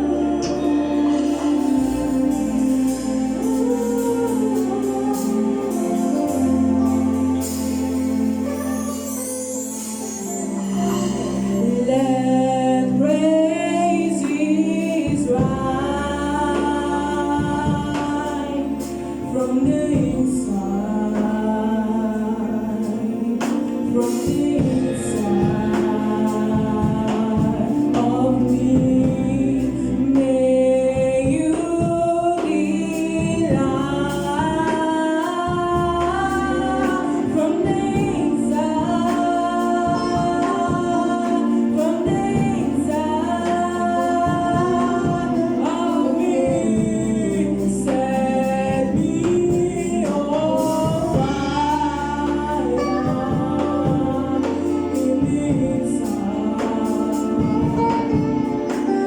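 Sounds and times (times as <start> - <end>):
band accompaniment with bass and beat: 0.0 - 59.0
gospel choir singing: 0.0 - 59.0.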